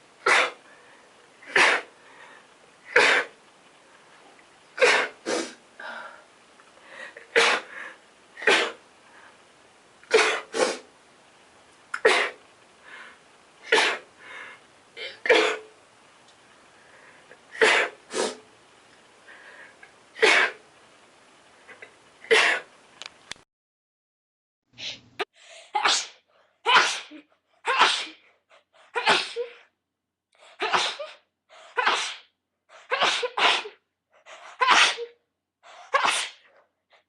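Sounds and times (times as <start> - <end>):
person sneezing: 0.2 - 0.6, 1.5 - 1.9, 2.9 - 3.4, 4.8 - 5.6, 7.2 - 7.7, 8.4 - 8.8, 10.1 - 10.8, 12.0 - 12.4, 13.6 - 14.1, 15.0 - 15.7, 17.6 - 18.4, 20.2 - 20.6, 21.8 - 22.7, 25.7 - 28.2, 29.0 - 29.6, 30.6 - 33.8, 34.4 - 36.5.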